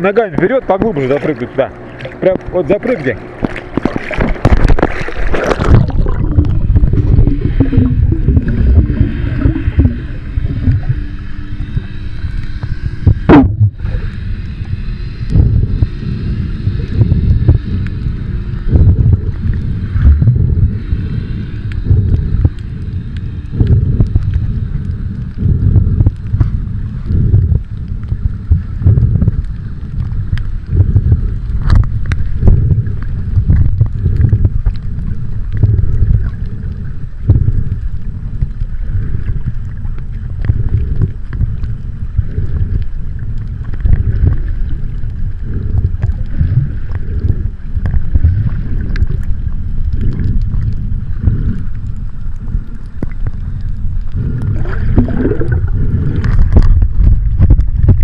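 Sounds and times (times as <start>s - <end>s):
muffled rumble on microphone: 0.0s - 58.0s.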